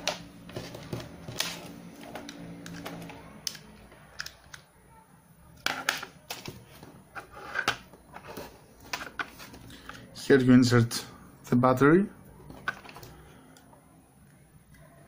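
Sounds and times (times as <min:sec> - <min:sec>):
plastic parts clicking: 0:00.0 - 0:04.7.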